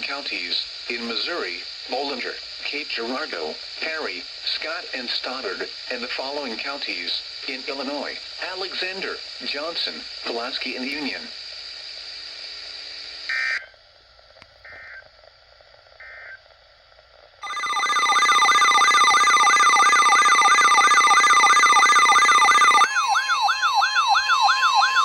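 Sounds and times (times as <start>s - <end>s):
short data-burst beeps: 17.4s - 23.1s
alarm tone with wailing siren: 17.4s - 25.0s.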